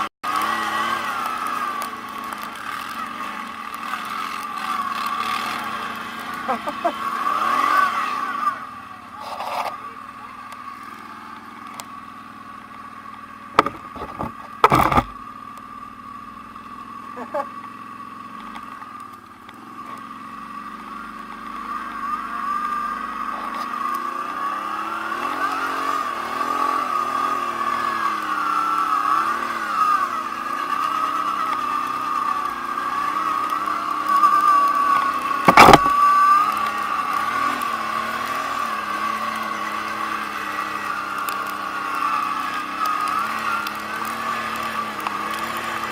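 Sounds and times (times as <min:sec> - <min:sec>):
engine whining and revving: 0:00.0 - 0:45.9
sharp knocks: 0:13.6 - 0:15.2, 0:35.4 - 0:35.9.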